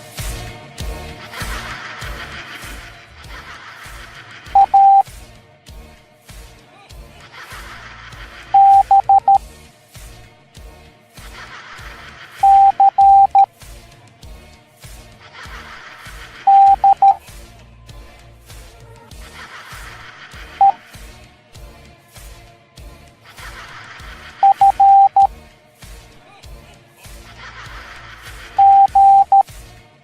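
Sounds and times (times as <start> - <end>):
background music with steady beat: 0.0 - 30.0
morse code beeps: 4.6 - 5.0, 8.6 - 9.4, 12.4 - 13.5, 16.5 - 17.2, 24.4 - 25.3, 28.6 - 29.4.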